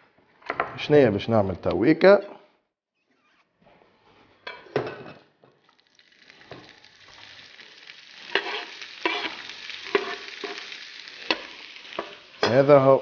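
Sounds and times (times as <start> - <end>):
food sizzling in a pan: 5.5 - 13.0.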